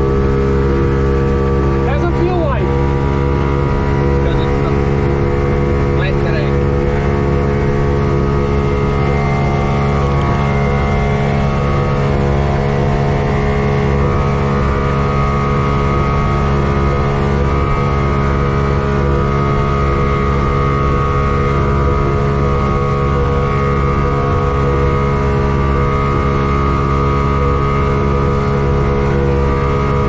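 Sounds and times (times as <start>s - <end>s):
outboard motor running: 0.0s - 30.0s.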